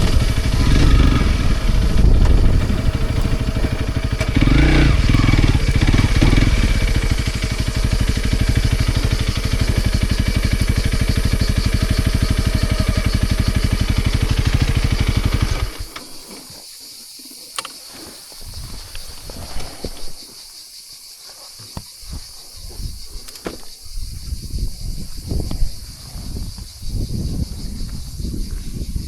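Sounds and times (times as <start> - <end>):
motorcycle engine running: 0.0 - 16.5.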